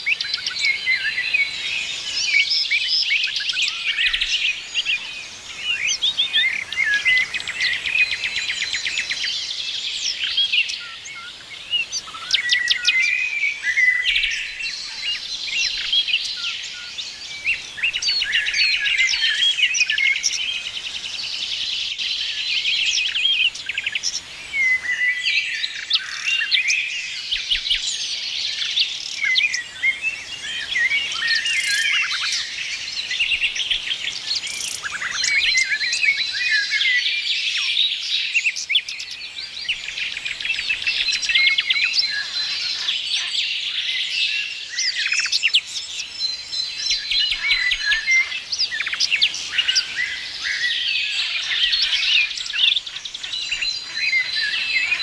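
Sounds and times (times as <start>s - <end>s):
songbirds chirping and trilling: 0.0s - 55.0s.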